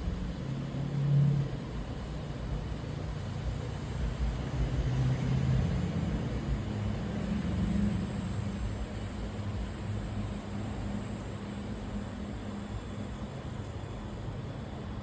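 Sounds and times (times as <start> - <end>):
low engine hum: 0.0 - 15.0.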